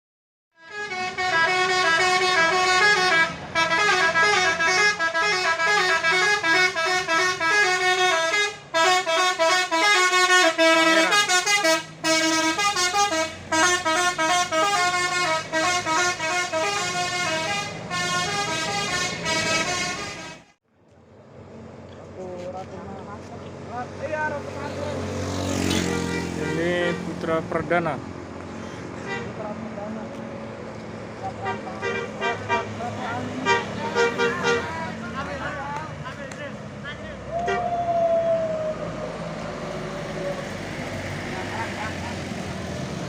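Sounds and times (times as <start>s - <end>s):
multi-trumpet musical horn tune: 0.6s - 20.5s.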